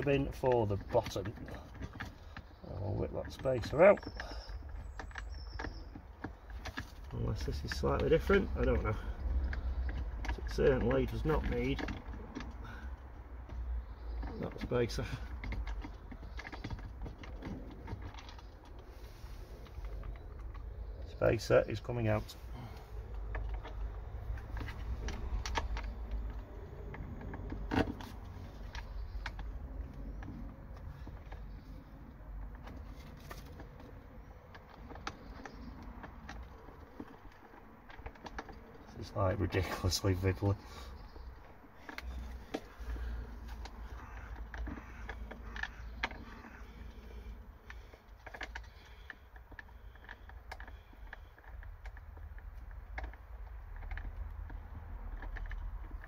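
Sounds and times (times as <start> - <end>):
small metallic clicks and knocks: 0.0 - 56.0.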